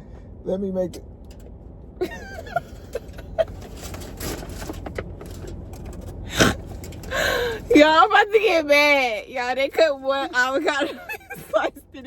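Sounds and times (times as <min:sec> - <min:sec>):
clicks and rustling: 0:02.5 - 0:07.2.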